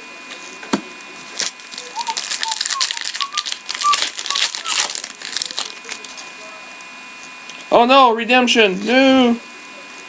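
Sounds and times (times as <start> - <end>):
cards and wrapper crinkling: 1.2 - 6.3.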